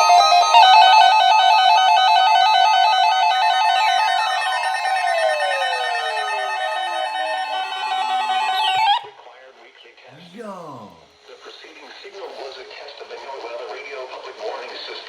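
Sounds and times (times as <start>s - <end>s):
electronic alarms warbling: 3.3s - 9.0s.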